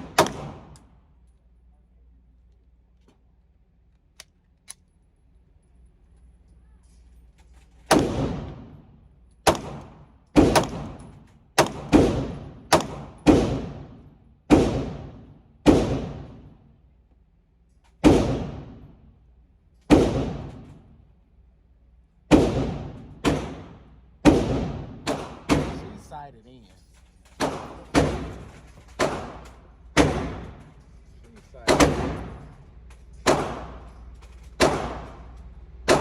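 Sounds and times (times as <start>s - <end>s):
pistol shots echoing: 0.0s - 0.8s, 7.9s - 8.8s, 9.4s - 16.5s, 18.0s - 18.8s, 22.3s - 26.0s, 27.4s - 30.6s, 31.7s - 32.5s, 33.2s - 33.9s, 34.6s - 36.0s.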